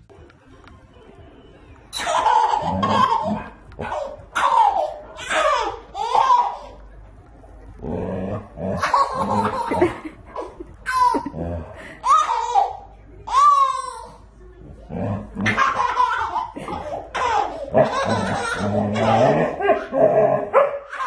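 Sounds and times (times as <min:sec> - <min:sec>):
person laughing: 0:09.0 - 0:12.0.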